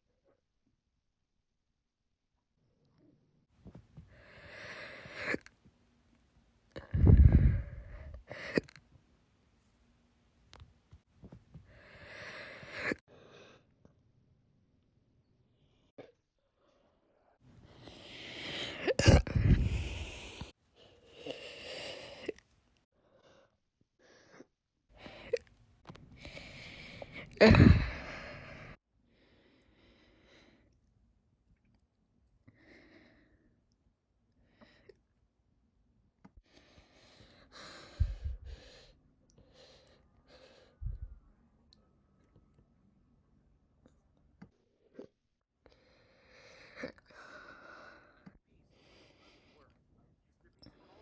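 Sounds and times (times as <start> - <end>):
heavy breathing: 6.8 - 8.6, 11.6 - 13.7, 16.6 - 22.4, 26.2 - 30.6, 36.4 - 41.2
woman hiccuping: 27.4 - 27.9.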